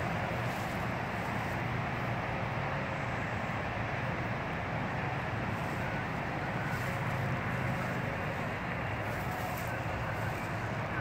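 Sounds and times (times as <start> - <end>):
radio static hiss: 5.1 - 11.0.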